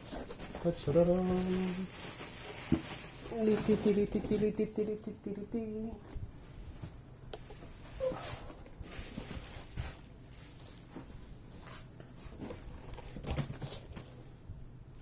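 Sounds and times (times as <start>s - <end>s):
paper and packaging rustling: 0.0s - 4.7s, 7.4s - 14.3s.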